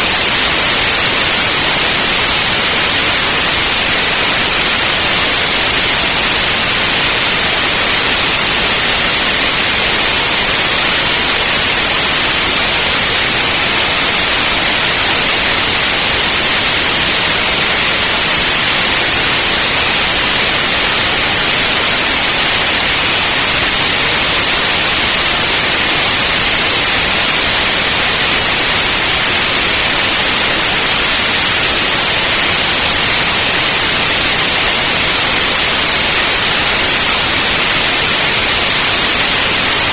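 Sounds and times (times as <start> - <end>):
steady white noise hiss: 0.0 - 39.9.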